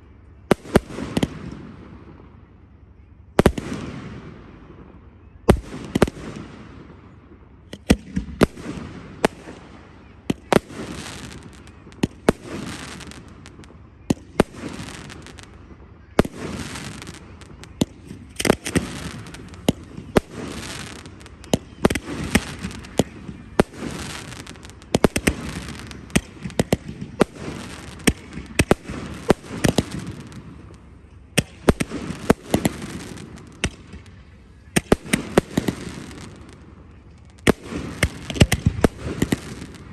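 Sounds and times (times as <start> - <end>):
fireworks bangs: 3.4 - 39.9.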